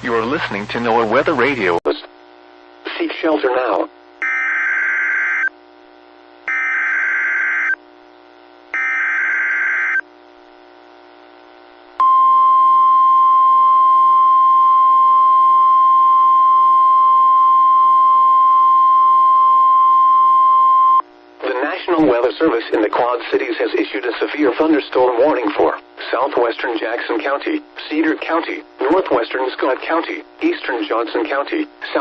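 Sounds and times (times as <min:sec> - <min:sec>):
steady alarm tone: 0:04.2 - 0:05.5, 0:06.5 - 0:07.8, 0:08.8 - 0:10.0.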